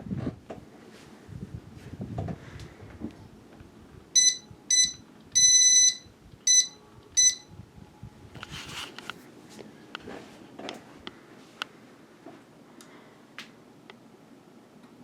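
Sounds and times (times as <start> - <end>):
fan control beeps: 4.2 - 7.6.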